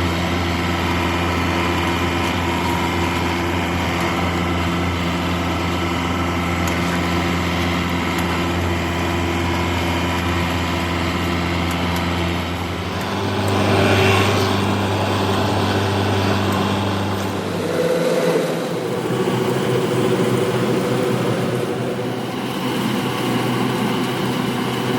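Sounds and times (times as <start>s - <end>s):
harvesting machine engine running: 0.0s - 24.9s.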